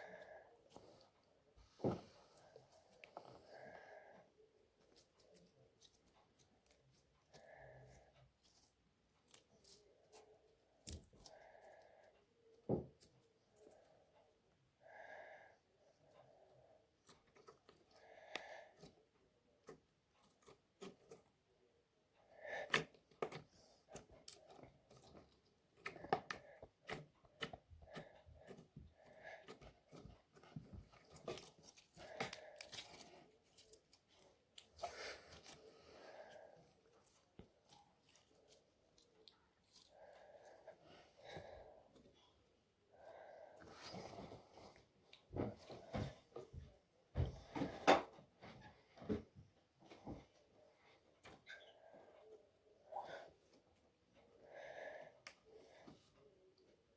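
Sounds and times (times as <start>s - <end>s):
faint clicks and taps: 22.5s - 35.8s.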